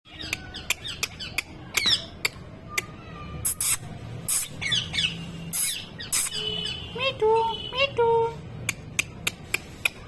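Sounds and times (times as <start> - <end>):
parrot chirping and clicking: 0.2 - 2.9
parrot squawking: 3.4 - 7.0.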